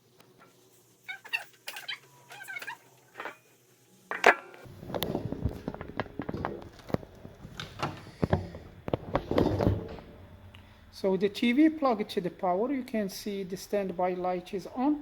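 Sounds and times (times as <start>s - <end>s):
knocks and clatter on workbench: 4.1s - 10.1s.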